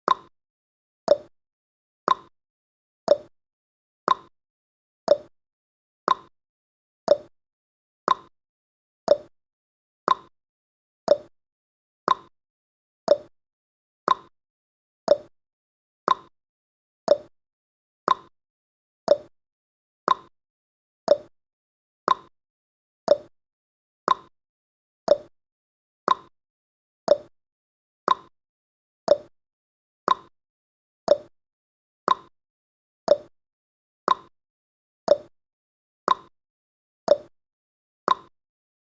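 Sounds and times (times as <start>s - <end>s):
clock ticking: 29.1s - 29.3s.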